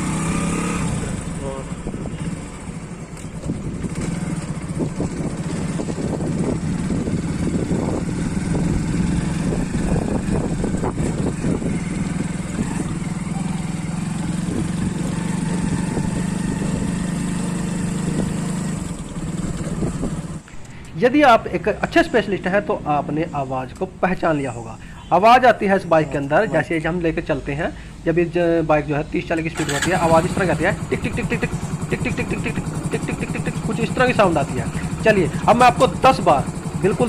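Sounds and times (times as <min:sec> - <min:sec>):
motorcycle engine running: 0:00.0 - 0:20.5, 0:29.6 - 0:37.0
engine ticking and knocking: 0:29.5 - 0:37.0.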